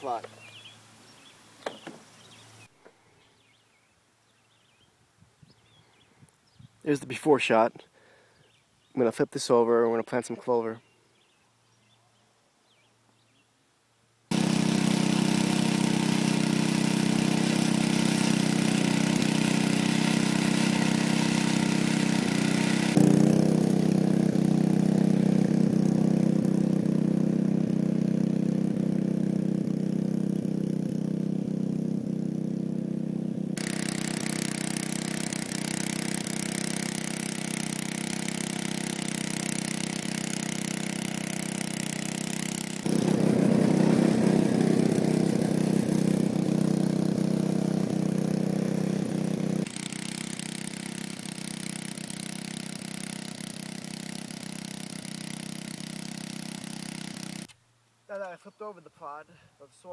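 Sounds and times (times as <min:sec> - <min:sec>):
rototiller engine running: 0:14.3 - 0:57.6.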